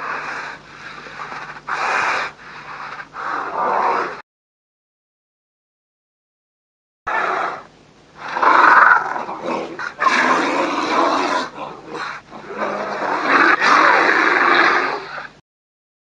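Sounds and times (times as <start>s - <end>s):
creature growling: 8.2s - 15.3s.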